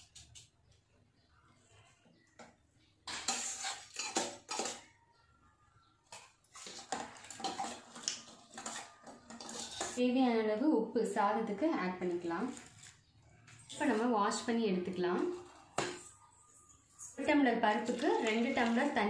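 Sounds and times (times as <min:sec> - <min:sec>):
metal utensils and pots clattering: 0:01.8 - 0:05.2, 0:06.0 - 0:10.2, 0:12.0 - 0:14.4, 0:15.2 - 0:19.0.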